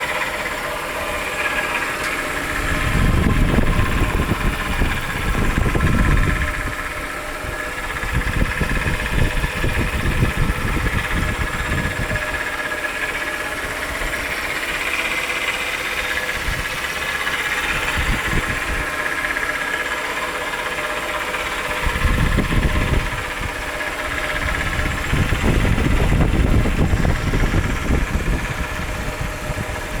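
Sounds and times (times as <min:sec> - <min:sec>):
car engine idling: 0:00.0 - 0:30.0
engine rattle: 0:00.0 - 0:30.0
heavy low rumble: 0:00.7 - 0:15.2, 0:21.6 - 0:30.0.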